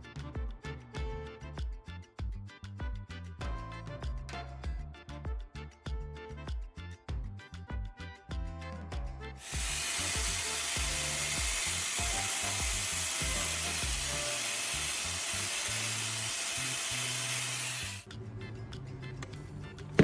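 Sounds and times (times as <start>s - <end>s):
background music: 0.0s - 20.0s
angle grinder grinding metal: 9.4s - 18.1s.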